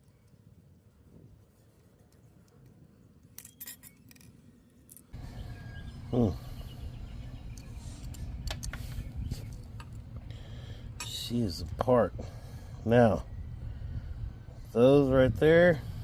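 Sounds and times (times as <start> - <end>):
metallic clinks of toy parts: 3.3 - 5.1.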